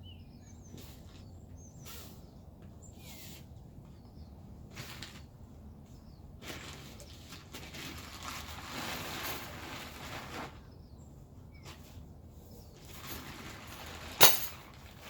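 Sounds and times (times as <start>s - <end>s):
fabric and packaging rustling: 6.4s - 10.8s, 12.8s - 15.0s.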